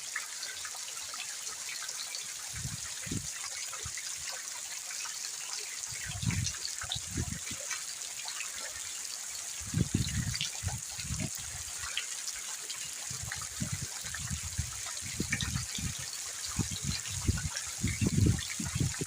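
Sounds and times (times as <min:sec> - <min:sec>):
water drips ticking: 0:05.8 - 0:19.0.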